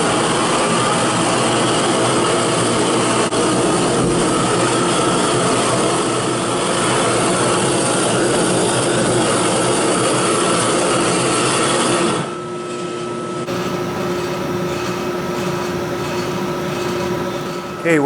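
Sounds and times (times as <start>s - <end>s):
air blower rushing: 13.5s - 18.0s
faint hum: 13.5s - 18.0s.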